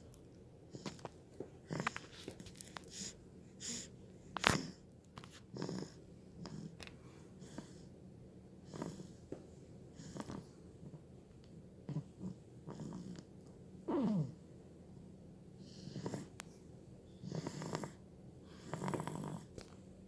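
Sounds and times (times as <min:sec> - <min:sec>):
baby snoring: 0:05.5 - 0:06.7, 0:13.9 - 0:14.4, 0:17.2 - 0:19.5.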